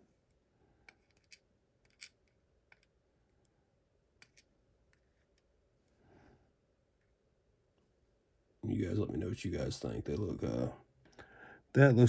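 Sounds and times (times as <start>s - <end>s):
small lock pins clicking: 0.8s - 2.9s.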